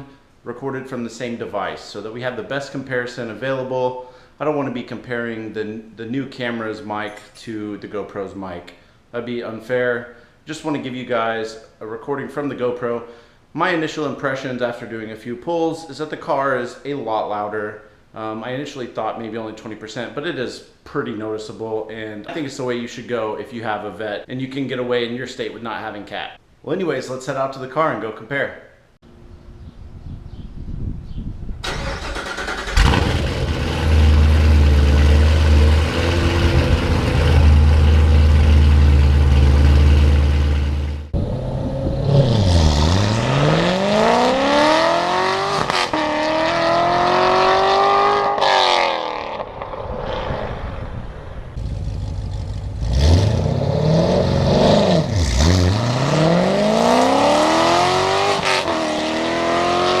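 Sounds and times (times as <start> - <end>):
car engine starting: 31.6 - 50.2, 51.6 - 60.0
car engine revving: 31.7 - 50.2, 51.6 - 60.0
car engine idling: 32.5 - 41.2, 51.6 - 53.0.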